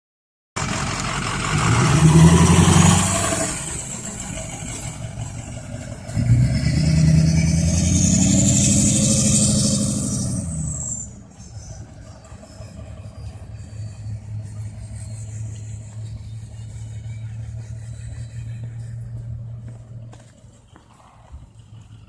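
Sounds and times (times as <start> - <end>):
diesel engine revving: 0.6 - 20.7
turbo whistling: 7.2 - 19.2.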